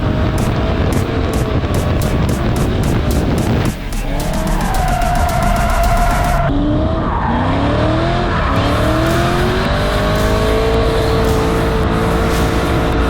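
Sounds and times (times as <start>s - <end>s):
background music: 0.0s - 6.5s, 8.4s - 13.0s
car engine revving: 0.0s - 13.0s
tyre squeal: 3.9s - 7.6s.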